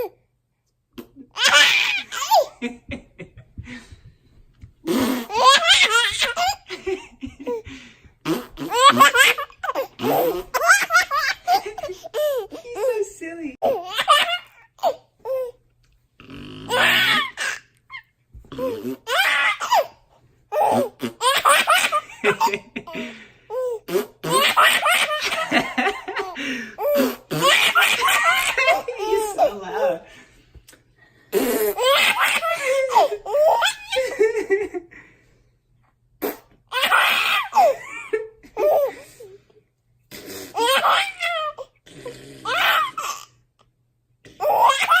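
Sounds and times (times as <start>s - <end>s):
baby laughing: 1.0s - 3.9s, 4.8s - 15.6s, 16.6s - 30.0s, 31.4s - 34.6s, 36.3s - 39.3s, 40.2s - 41.8s, 42.4s - 43.4s, 44.4s - 45.0s
low buzzy fart noise: 4.6s - 5.5s, 8.2s - 9.4s, 16.2s - 17.2s, 31.3s - 31.9s, 36.2s - 36.6s, 40.1s - 40.6s, 41.8s - 42.8s.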